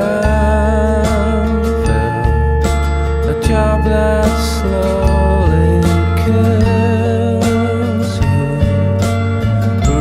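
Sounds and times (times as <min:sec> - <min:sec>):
melodic background music: 0:00.0 - 0:10.0.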